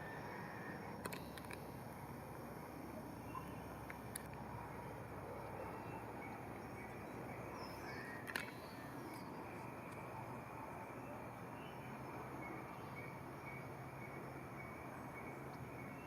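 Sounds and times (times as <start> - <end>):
outdoor background noise: 0.0 - 16.0
light clicks: 1.0 - 1.7, 3.8 - 4.4, 8.2 - 10.0
faint high chirp: 3.2 - 3.6.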